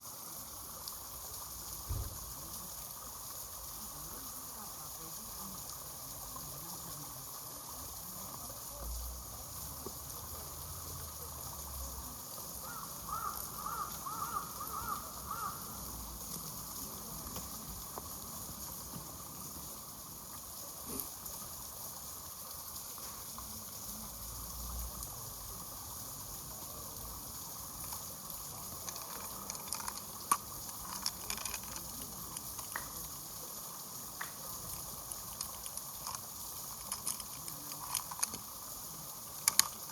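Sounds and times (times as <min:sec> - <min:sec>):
steady background hiss: 0:00.0 - 0:39.9
bird calling: 0:12.6 - 0:15.8.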